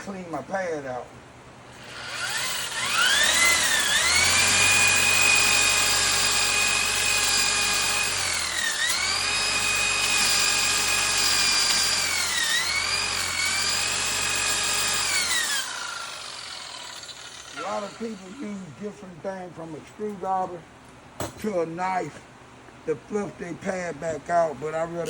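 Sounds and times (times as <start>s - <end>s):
electric buffer whining: 1.7s - 19.0s.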